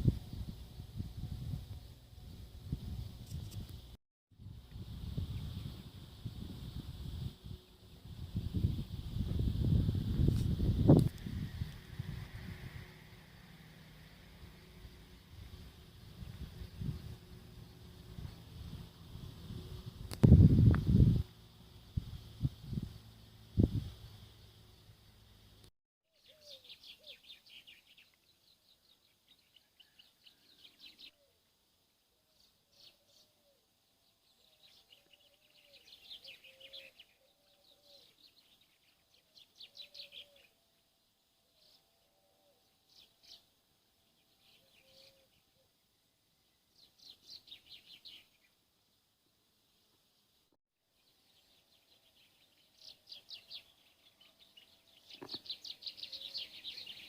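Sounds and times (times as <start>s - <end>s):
short low bird calls: 26.1s - 28.1s, 34.3s - 38.6s, 39.4s - 40.6s, 44.3s - 45.8s, 51.5s - 57.0s
songbirds singing trilled phrases: 26.1s - 31.3s, 32.4s - 40.6s, 41.6s - 45.7s, 51.0s - 57.0s.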